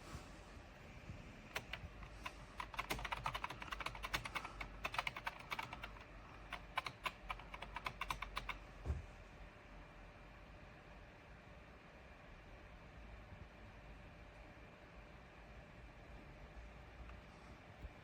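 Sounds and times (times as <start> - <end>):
keyboard key clicks: 1.5 - 8.6.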